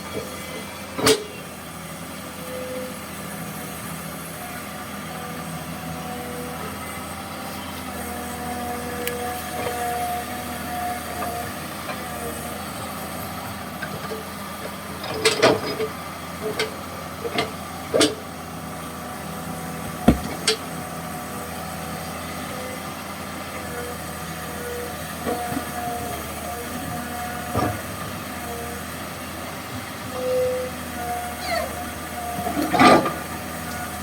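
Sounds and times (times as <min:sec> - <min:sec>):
excavator engine running: 0:15.7 - 0:21.6
sharp metallic knocks: 0:19.8 - 0:20.6.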